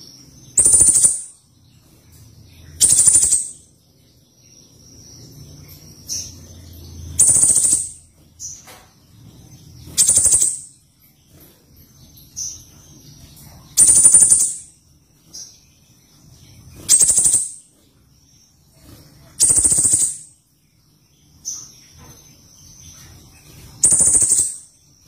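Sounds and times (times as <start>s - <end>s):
songbird rattling calls: 0.6s - 1.3s, 2.8s - 3.6s, 7.1s - 8.6s, 9.8s - 10.7s, 13.8s - 14.7s, 16.8s - 17.7s, 18.7s - 20.3s, 23.8s - 24.6s.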